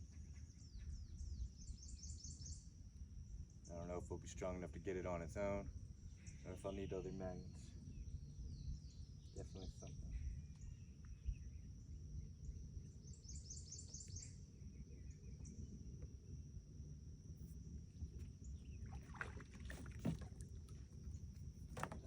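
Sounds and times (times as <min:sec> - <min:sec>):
high insect drone: 0:00.0 - 0:22.0.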